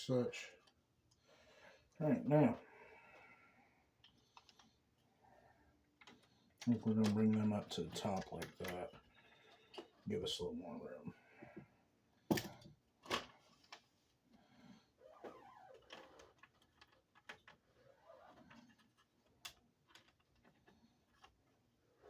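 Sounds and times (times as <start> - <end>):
light clicks and taps: 6.0 - 9.0
rustling and scraping of wires: 14.9 - 22.0.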